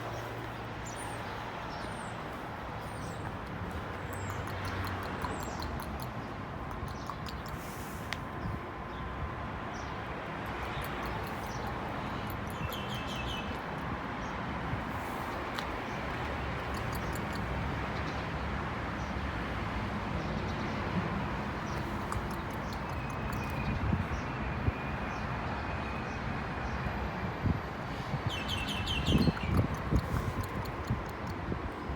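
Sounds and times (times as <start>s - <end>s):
small birds chirping: 0.0s - 9.0s, 9.7s - 18.4s, 20.3s - 24.4s, 28.3s - 31.9s
short high bird ticks: 2.9s - 8.3s, 10.4s - 13.9s, 15.3s - 17.7s, 21.6s - 23.8s, 28.6s - 31.4s.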